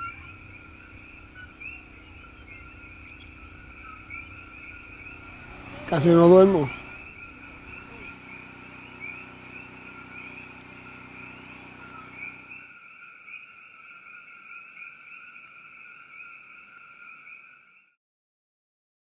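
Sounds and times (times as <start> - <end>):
small chirps: 0.0 - 12.5
low steady hum: 0.0 - 12.6
insects and frogs trilling: 0.0 - 18.0.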